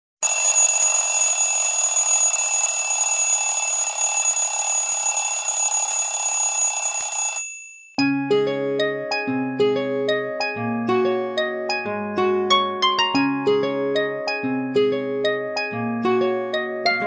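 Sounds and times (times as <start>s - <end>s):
phone alarm ringing: 0.2s - 7.9s.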